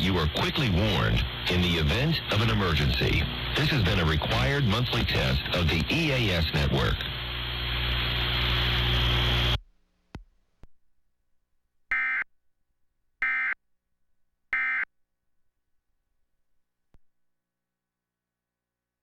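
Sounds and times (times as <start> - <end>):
loud hiss with low hum: 0.0 - 9.7.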